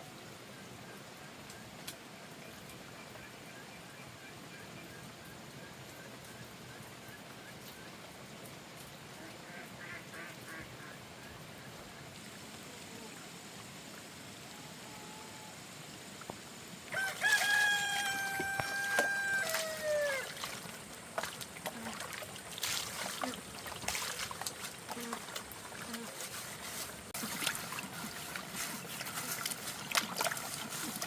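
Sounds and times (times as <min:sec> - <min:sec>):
rooster crowing: 0:16.9 - 0:20.4.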